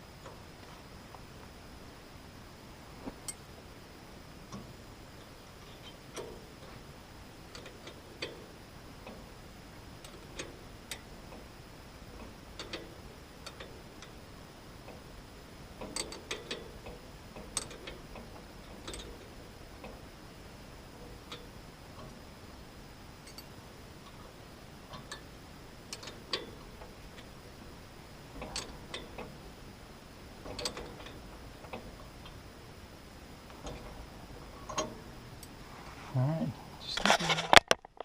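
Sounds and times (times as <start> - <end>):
allen key clicking on metal screws: 7.5 - 8.4, 15.8 - 16.7, 17.4 - 18.0, 25.9 - 26.6.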